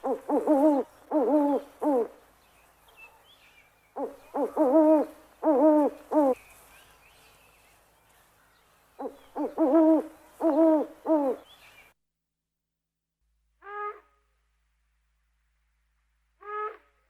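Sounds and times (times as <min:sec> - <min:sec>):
owl hooting: 0:00.0 - 0:02.2, 0:04.0 - 0:06.4, 0:09.0 - 0:11.5.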